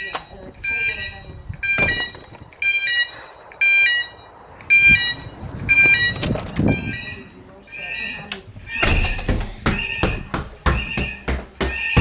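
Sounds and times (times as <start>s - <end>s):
fire alarm pulsed beeping: 0.0s - 12.0s
knocks: 8.8s - 12.0s.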